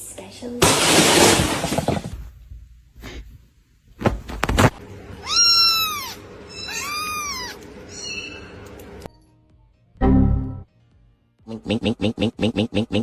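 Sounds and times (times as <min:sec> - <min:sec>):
cat meowing: 0:05.2 - 0:08.6.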